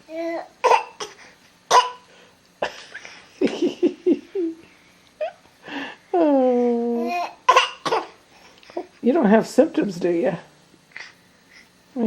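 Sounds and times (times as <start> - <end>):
toddler fake coughing: 0.6 - 2.0, 7.5 - 8.2
toddler vocal sounds: 6.4 - 7.8.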